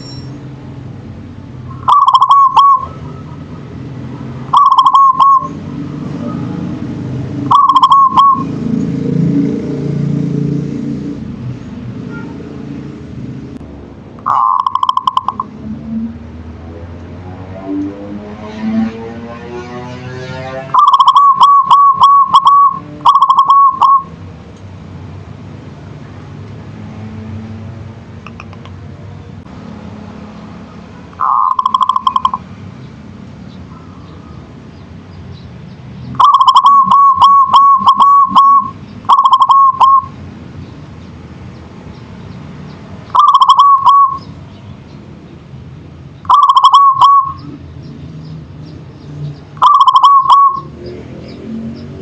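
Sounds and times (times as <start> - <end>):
dove cooing: 1.8 - 3.0, 4.5 - 5.5, 7.5 - 8.5, 14.2 - 15.5, 20.8 - 24.1, 31.2 - 32.4, 36.2 - 40.1, 43.1 - 44.2, 46.3 - 47.4, 49.6 - 50.7.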